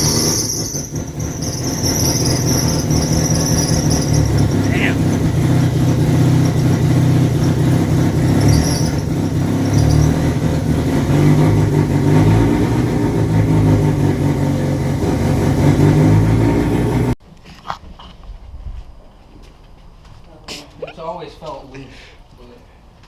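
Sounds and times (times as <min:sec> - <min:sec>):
car engine running: 0:00.0 - 0:17.2.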